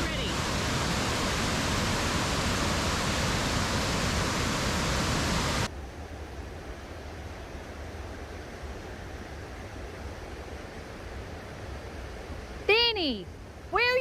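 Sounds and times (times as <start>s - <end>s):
waterfall rushing: 0.0s - 5.7s.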